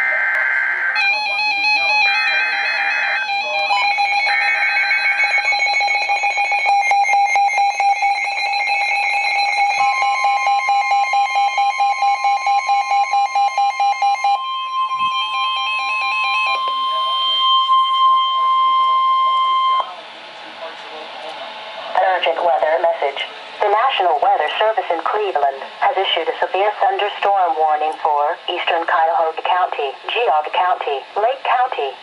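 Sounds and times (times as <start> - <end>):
warbling electronic alarm: 0.0 - 20.0
steady alarm tone: 0.0 - 32.0.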